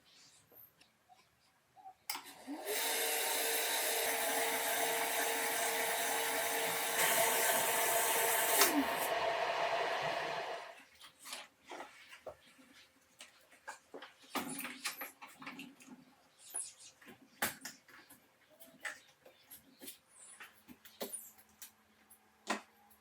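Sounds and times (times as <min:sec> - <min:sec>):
electric blower running: 0:02.3 - 0:10.8.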